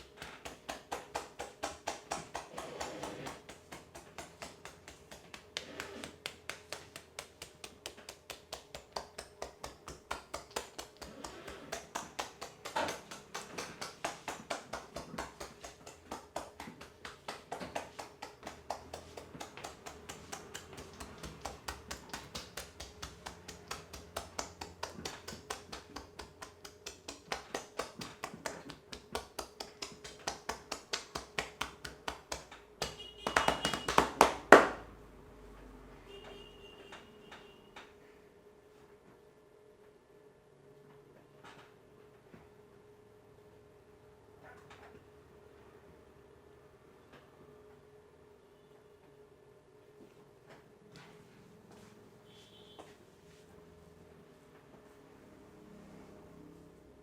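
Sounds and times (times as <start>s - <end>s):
hands tapping on a head: 0.0s - 34.8s.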